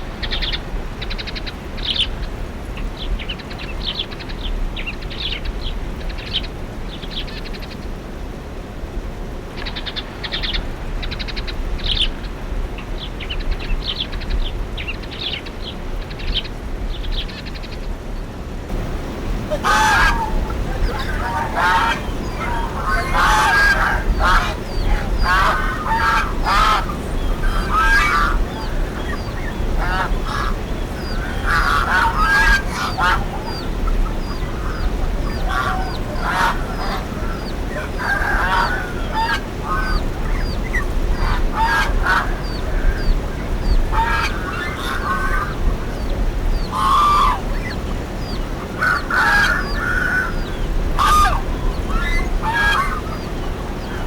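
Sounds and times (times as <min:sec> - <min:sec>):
low background noise: 0:00.0 - 0:54.0
large birds calling: 0:18.7 - 0:54.0.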